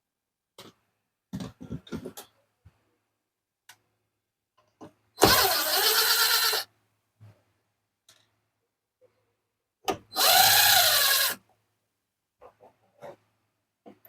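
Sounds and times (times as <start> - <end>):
power drill running: 5.2 - 6.6, 10.2 - 11.4.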